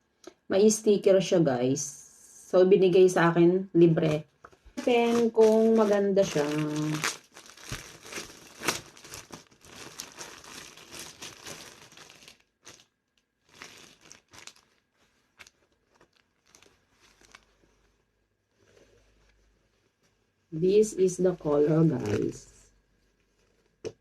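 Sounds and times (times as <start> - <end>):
packaging crinkled by hand: 4.5 - 20.1.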